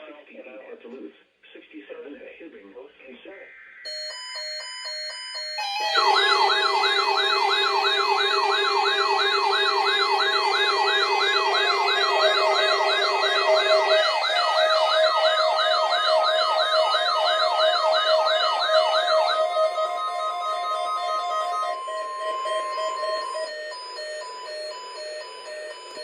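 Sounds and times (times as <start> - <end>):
steady lower tone: 5.6 - 24.5
warbling electronic siren tone: 5.6 - 26.0.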